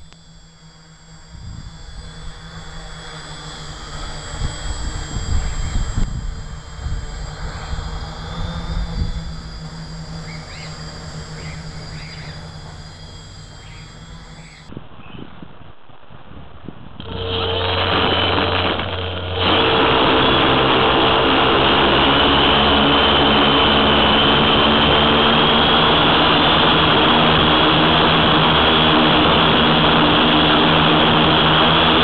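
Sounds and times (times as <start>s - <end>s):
drone propellers whining: 0.0s - 32.0s
wind rumbling on microphone: 1.2s - 3.0s, 3.7s - 32.0s.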